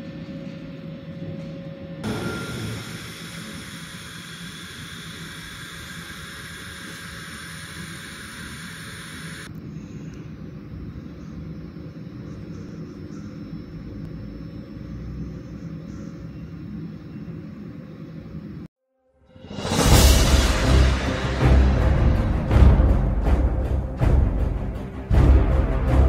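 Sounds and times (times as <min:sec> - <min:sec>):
welding machine rumble and hum: 0:00.0 - 0:18.7
bright hiss: 0:02.0 - 0:09.5.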